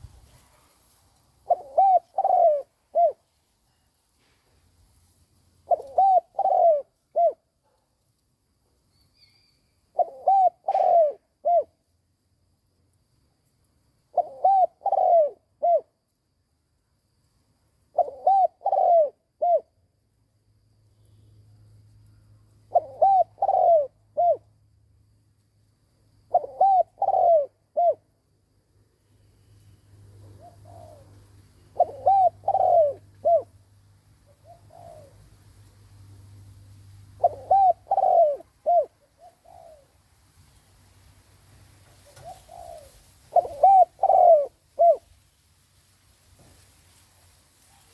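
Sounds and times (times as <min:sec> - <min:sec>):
dove cooing: 0:01.4 - 0:03.3, 0:05.6 - 0:07.5, 0:09.9 - 0:11.8, 0:14.1 - 0:16.0, 0:17.9 - 0:19.8, 0:22.7 - 0:24.5, 0:26.3 - 0:28.1, 0:30.1 - 0:33.6, 0:34.3 - 0:35.4, 0:37.1 - 0:40.0, 0:42.0 - 0:45.1.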